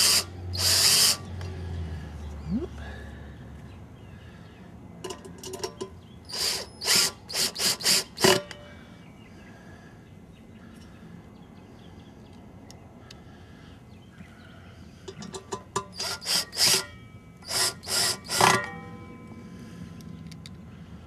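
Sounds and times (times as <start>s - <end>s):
loud rasping scraping strokes: 16.0s - 18.7s.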